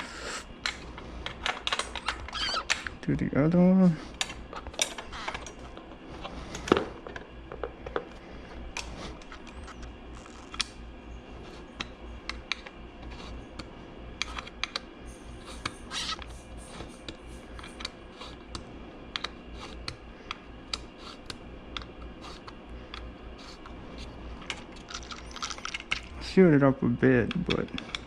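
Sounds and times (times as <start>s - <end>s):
hand tools clicking and tapping: 11.8s - 23.7s.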